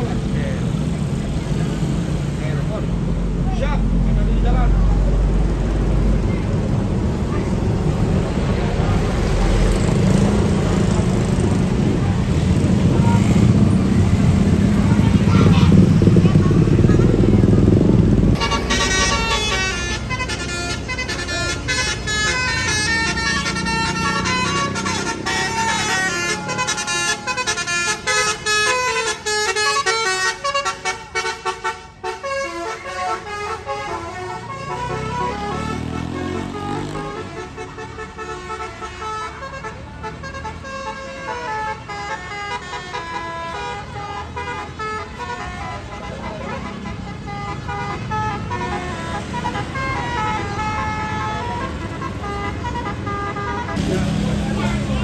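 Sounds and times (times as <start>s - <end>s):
bus engine rumbling: 0.0s - 55.0s
multi-tone bus horn tune: 7.8s - 55.0s.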